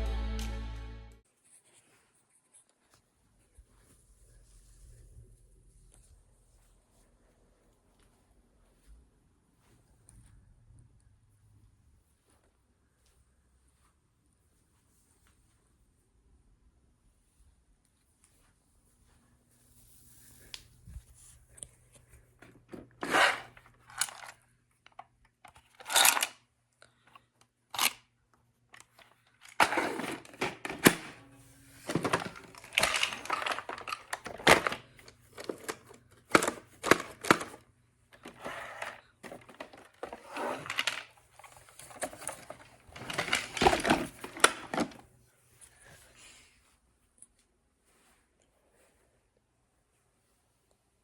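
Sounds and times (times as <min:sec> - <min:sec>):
plastic bricks clattering: 0:31.8 - 0:37.6, 0:41.8 - 0:45.0.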